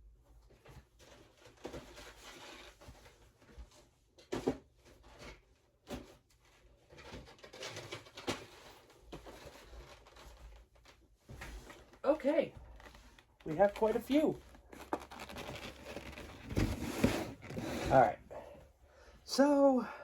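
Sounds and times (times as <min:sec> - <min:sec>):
packaging rustling: 0:06.9 - 0:18.2
items knocking: 0:13.5 - 0:18.1.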